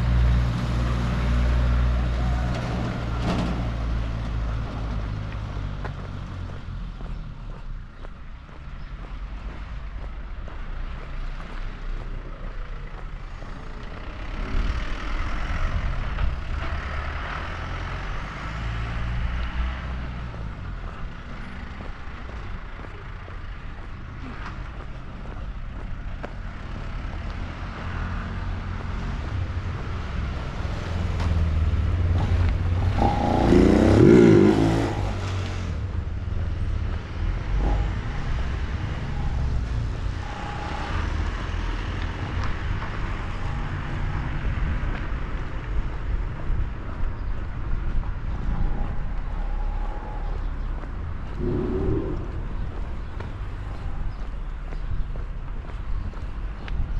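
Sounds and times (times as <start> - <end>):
motor vehicle passing: 0.0 - 56.6
wind buffeting microphone: 42.0 - 56.9.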